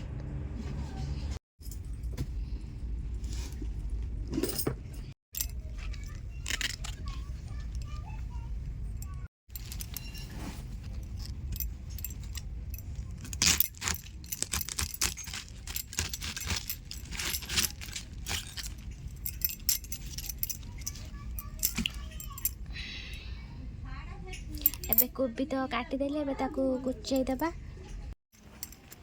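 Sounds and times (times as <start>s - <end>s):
light metallic clinks: 8.9s - 22.7s, 24.3s - 25.1s, 27.2s - 29.0s.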